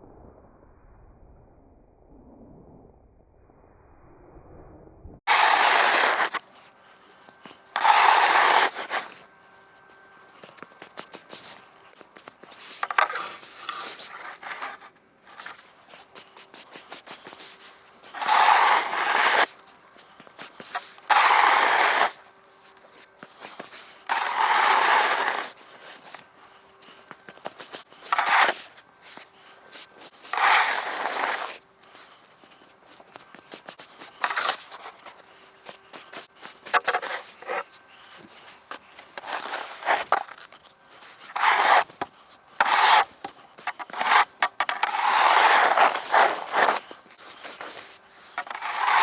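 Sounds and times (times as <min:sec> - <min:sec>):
snow shovel scraping on ice: 0:05.3 - 0:49.0.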